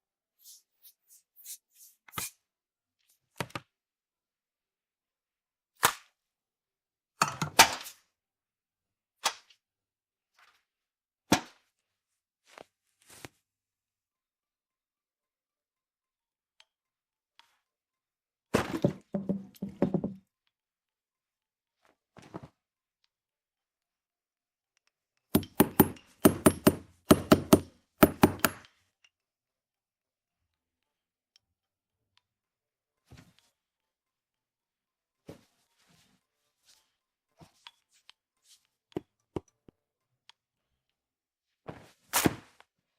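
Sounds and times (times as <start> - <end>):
cartoon knocks and clatters: 18.6 - 20.2.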